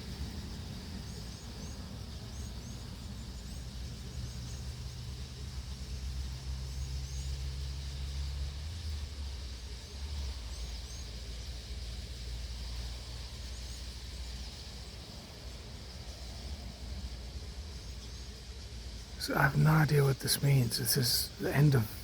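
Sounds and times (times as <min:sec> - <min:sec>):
birds chirping: 0:17.6 - 0:22.0.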